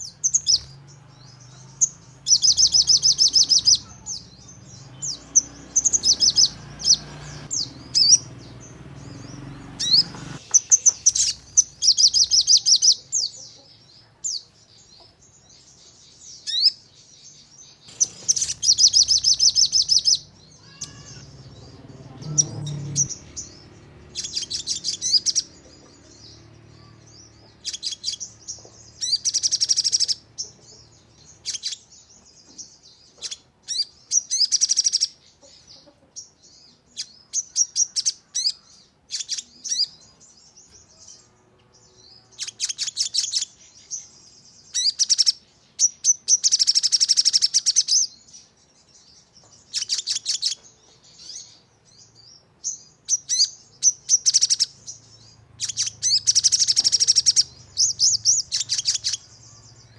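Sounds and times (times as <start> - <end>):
bird trilling: 0.0 - 13.3, 17.9 - 30.6, 53.1 - 59.9
bird chirps: 0.0 - 59.9.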